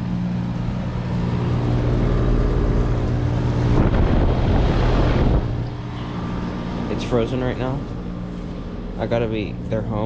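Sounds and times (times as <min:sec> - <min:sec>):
fan rushing: 0:00.0 - 0:10.0
heat pump compressor hum: 0:00.0 - 0:10.0
rough rush of noise: 0:01.2 - 0:09.0.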